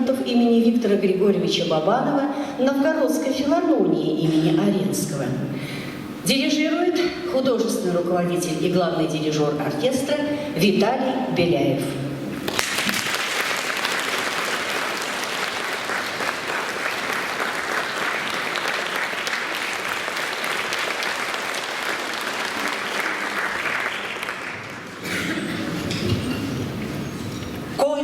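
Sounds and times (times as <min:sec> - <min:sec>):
audience applauding: 0:12.4 - 0:25.6.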